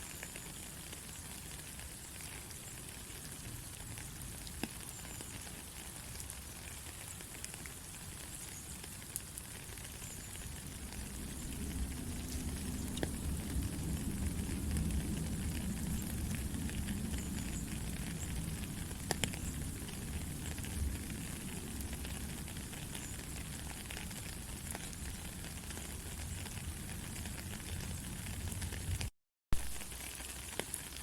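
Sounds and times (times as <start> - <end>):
steady rain falling: 0.0 - 31.0
sharp drip ticks: 3.5 - 20.9
low rumble: 10.7 - 22.4.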